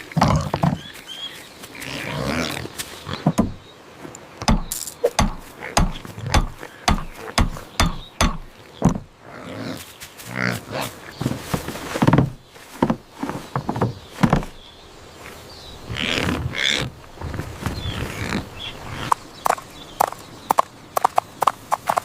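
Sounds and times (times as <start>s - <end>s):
cartoon sharp knocks: 4.4s - 9.0s.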